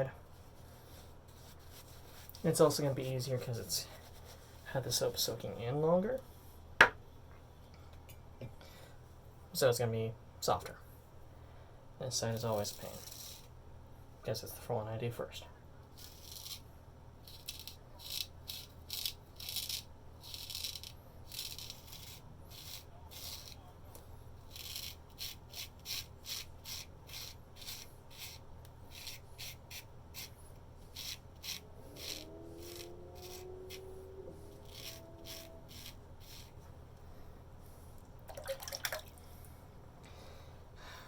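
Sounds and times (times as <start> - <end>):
straight razor scraping hair: 16.0 - 16.6, 17.2 - 23.6, 24.5 - 36.6.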